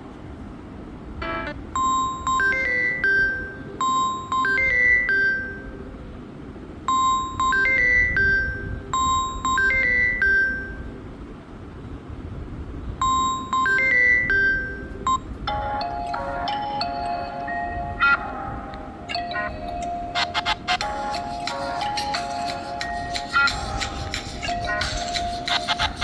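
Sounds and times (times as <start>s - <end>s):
chiming ringtone melody: 1.2s - 5.8s, 6.9s - 10.8s, 13.0s - 26.0s.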